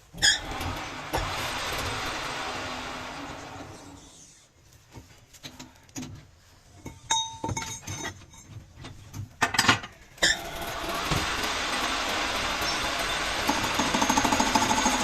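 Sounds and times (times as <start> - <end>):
lathe running: 0.4 - 4.1, 10.4 - 15.0
metal tools clinking and knocking: 6.9 - 10.0.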